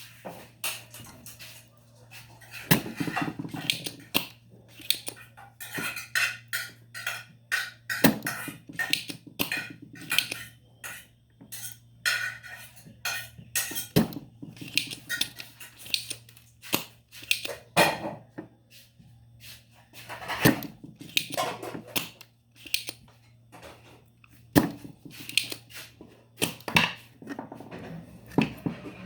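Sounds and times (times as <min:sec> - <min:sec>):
tools scraping and tapping: 0:00.0 - 0:29.0
desoldering pump snapping: 0:02.5 - 0:12.4, 0:13.0 - 0:18.0, 0:20.2 - 0:23.3, 0:24.1 - 0:27.4.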